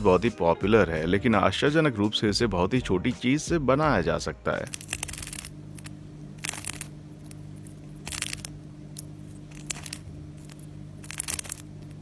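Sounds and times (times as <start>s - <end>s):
steady low hum: 4.7s - 12.0s.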